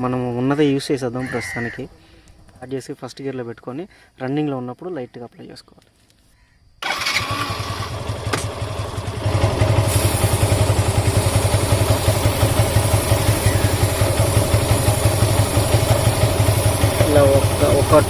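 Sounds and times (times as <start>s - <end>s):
motorcycle engine running: 6.8s - 18.0s
spray hiss: 9.7s - 18.0s.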